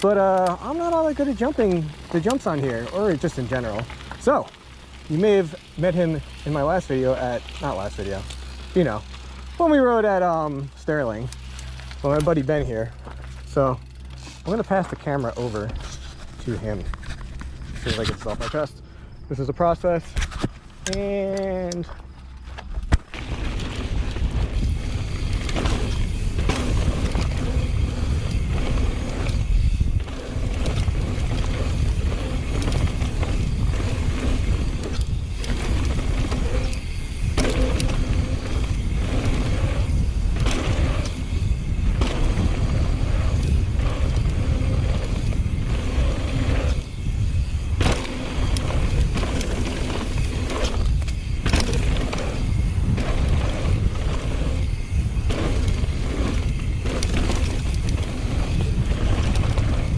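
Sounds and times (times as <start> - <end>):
bike clattering over bumps: 0.0 - 16.4, 20.1 - 59.9
bike tyres rolling on dirt: 0.0 - 59.9
wind on microphone: 22.8 - 59.9.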